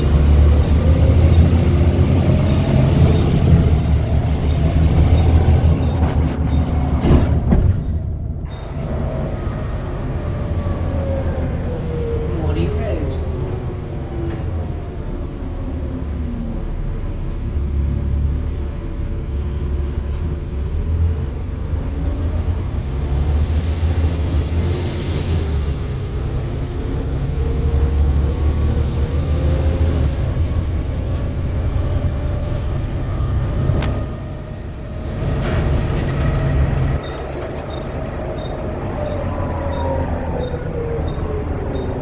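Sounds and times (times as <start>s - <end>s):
bus engine: 0.0s - 42.0s
transmission whine: 31.5s - 42.0s.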